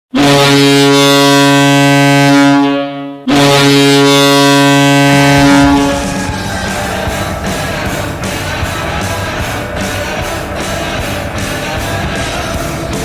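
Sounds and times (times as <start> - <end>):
air horn blasts: 0.1 - 11.9
rock song: 3.4 - 13.0.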